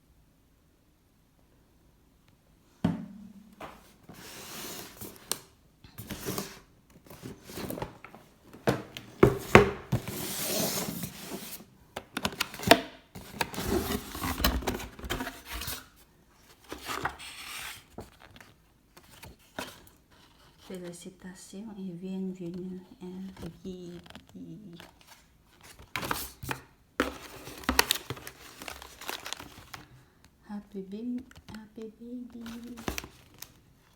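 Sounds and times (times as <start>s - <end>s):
package rustling and scraping: 3.6s - 20.8s, 24.8s - 29.9s, 32.4s - 33.7s.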